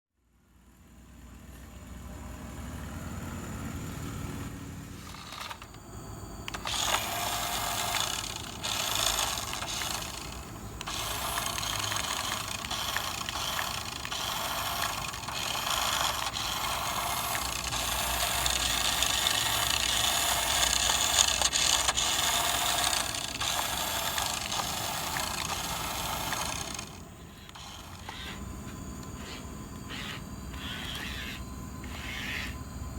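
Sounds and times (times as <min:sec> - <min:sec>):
model machinery motors whirring: 0:03.4 - 0:32.9.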